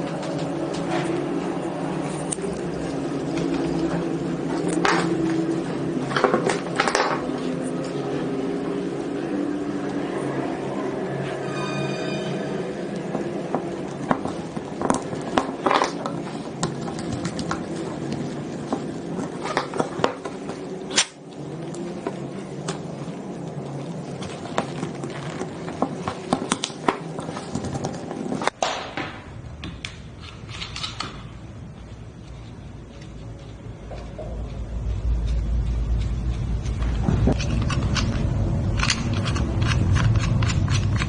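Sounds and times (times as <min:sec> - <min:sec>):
tools and metal parts clicking: 0:29.8 - 0:31.4, 0:32.2 - 0:41.0.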